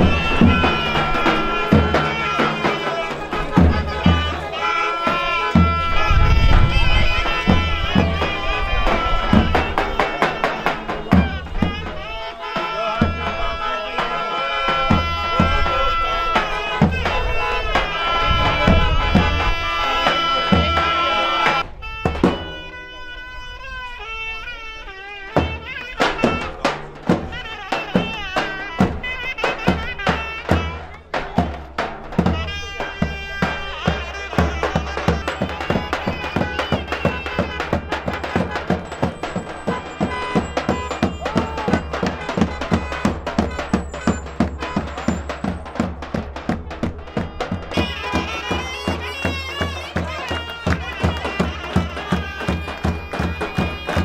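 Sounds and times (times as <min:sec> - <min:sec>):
deep steady drum beat: 0:00.0 - 0:22.9, 0:25.3 - 0:54.0
reedy wind instrument melody: 0:00.0 - 0:54.0.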